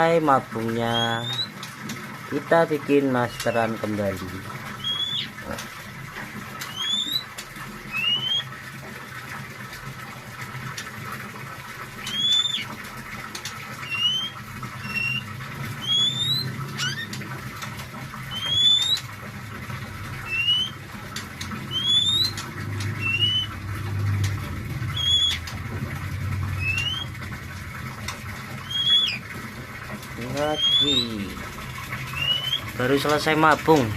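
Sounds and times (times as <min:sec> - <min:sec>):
songbird whistled calls: 0:00.9 - 0:01.6, 0:04.8 - 0:05.4, 0:06.6 - 0:07.3, 0:07.9 - 0:08.5, 0:12.0 - 0:12.7, 0:13.8 - 0:17.2, 0:18.3 - 0:19.1, 0:20.2 - 0:20.8, 0:21.7 - 0:22.4, 0:23.0 - 0:23.6, 0:24.9 - 0:25.5, 0:26.6 - 0:27.2, 0:28.6 - 0:29.3, 0:30.4 - 0:31.2, 0:32.1 - 0:32.7.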